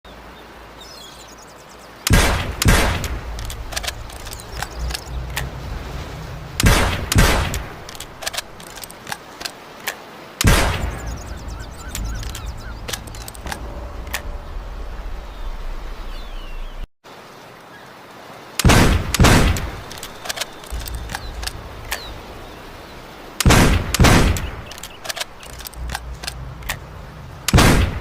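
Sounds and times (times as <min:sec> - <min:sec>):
shotgun blasts: 0:02.1 - 0:04.8, 0:06.6 - 0:08.7, 0:10.4 - 0:11.5, 0:18.6 - 0:21.4, 0:23.4 - 0:25.7, 0:27.5 - 0:28.0
small clicks: 0:02.1 - 0:05.7, 0:06.6 - 0:14.3, 0:18.6 - 0:22.2, 0:23.4 - 0:26.9.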